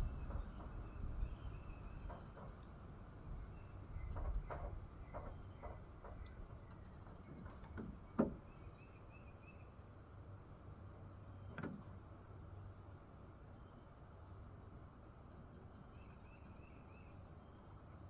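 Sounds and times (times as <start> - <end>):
low wind rumble: 0.0 - 2.2
soft clicks and knocks: 4.1 - 8.4.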